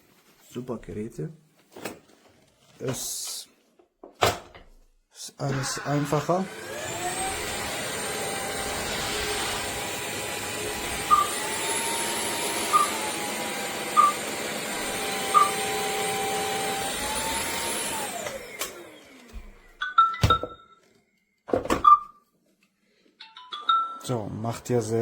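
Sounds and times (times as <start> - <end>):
vacuum motor whine: 5.5 - 19.7.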